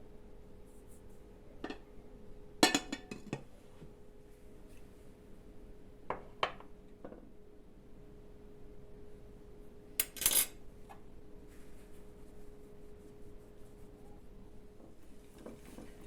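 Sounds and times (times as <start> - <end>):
utensils clinking against dishes: 2.6 - 3.4, 10.0 - 10.6.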